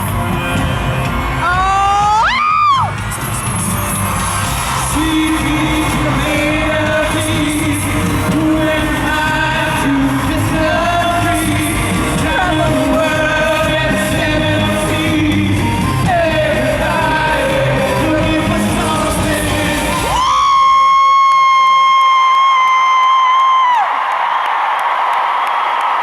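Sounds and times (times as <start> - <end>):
live band playing: 0.0 - 20.5
singer holding long notes: 0.0 - 21.4.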